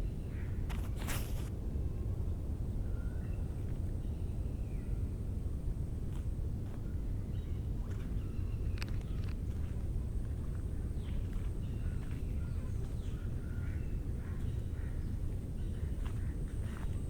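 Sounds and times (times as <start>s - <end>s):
faint bird calls and chirps: 2.8s - 5.2s, 6.7s - 17.0s.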